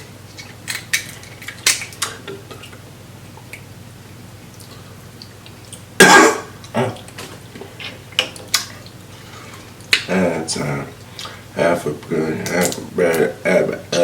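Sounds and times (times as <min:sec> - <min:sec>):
person coughing loudly: 0:06.0 - 0:07.0.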